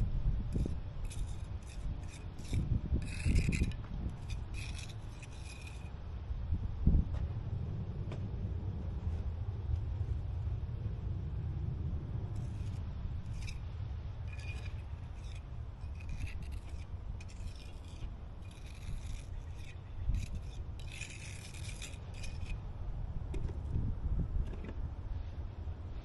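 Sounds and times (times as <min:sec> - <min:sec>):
steady low rumble: 0:00.0 - 0:26.0
rubbing or scraping strokes: 0:00.6 - 0:05.9, 0:12.3 - 0:22.6.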